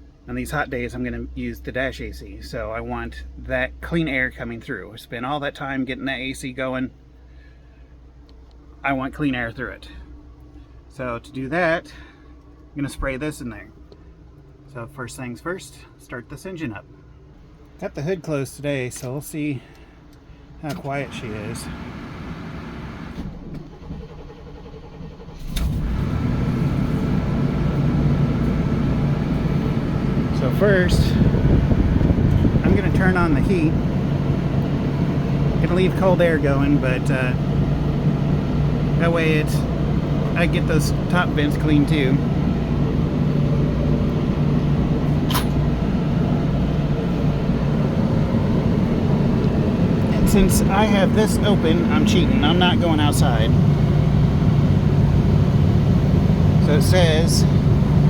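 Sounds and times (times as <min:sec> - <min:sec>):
heater fan blowing: 0:17.4 - 0:23.4, 0:25.5 - 0:58.0
engine idling: 0:19.6 - 0:58.0
engine cranking on starter: 0:20.7 - 0:58.0.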